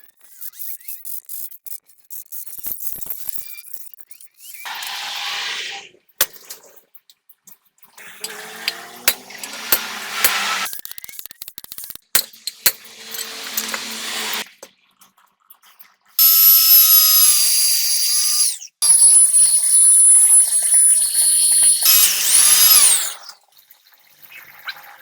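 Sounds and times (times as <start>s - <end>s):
high-pitched power tool: 4.7s - 5.9s, 8.0s - 10.7s, 12.2s - 14.5s, 16.2s - 23.4s.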